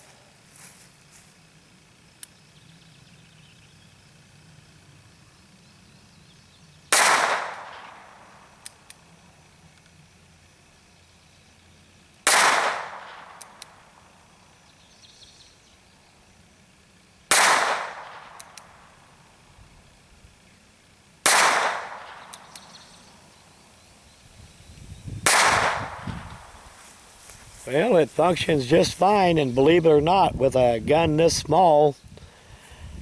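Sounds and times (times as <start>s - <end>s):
faint clicks: 18.3s - 18.7s, 22.3s - 22.7s
revolver shots echoing: 25.3s - 26.1s.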